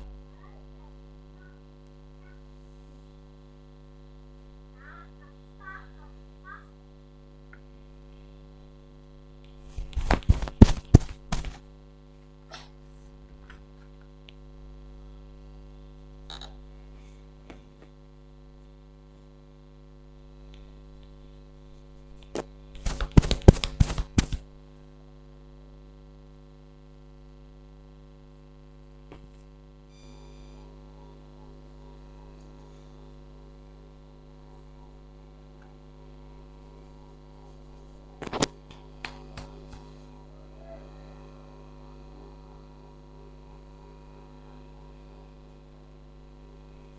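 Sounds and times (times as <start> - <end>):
steady electrical hum: 0.0 - 46.9
quick sharp massage hits: 9.7 - 11.6, 22.8 - 24.4.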